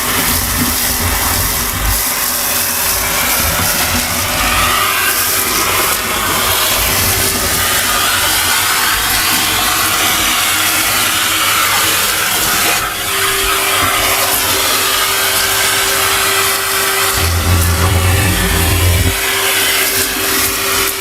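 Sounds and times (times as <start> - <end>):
vacuum cleaner running: 0.0 - 21.0
debris sucked through hose: 17.1 - 20.0.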